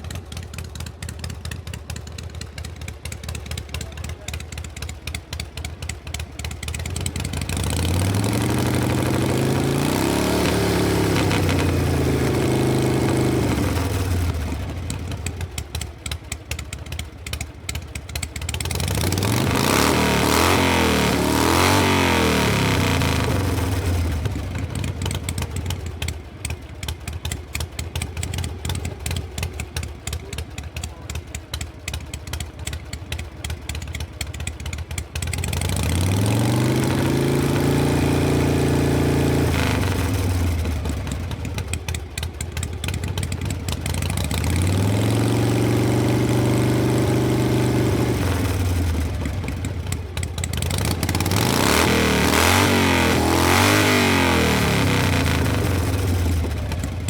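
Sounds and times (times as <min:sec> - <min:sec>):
motorcycle engine idling and revving: 0:00.0 - 0:57.0.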